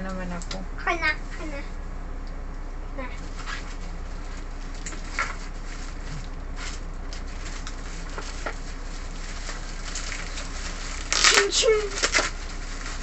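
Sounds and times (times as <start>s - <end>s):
low background hum: 0.0s - 13.0s
rustles and clicks of packaging: 3.2s - 13.0s.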